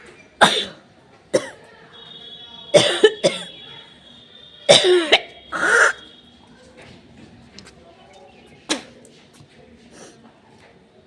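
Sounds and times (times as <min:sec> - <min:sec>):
person sneezing: 0:04.7 - 0:06.0.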